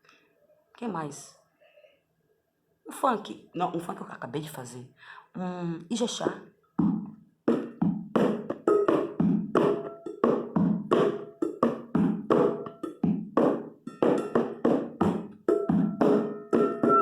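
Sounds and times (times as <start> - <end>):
hand percussion rhythm: 6.2 - 17.0.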